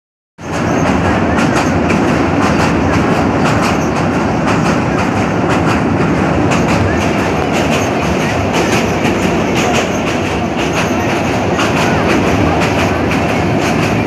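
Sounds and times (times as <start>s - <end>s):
train wheels clattering on rails: 0.4s - 14.0s.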